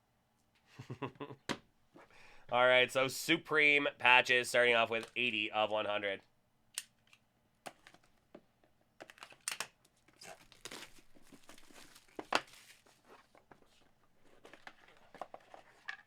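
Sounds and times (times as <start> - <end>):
packaging crinkling and tearing: 9.1 - 13.4.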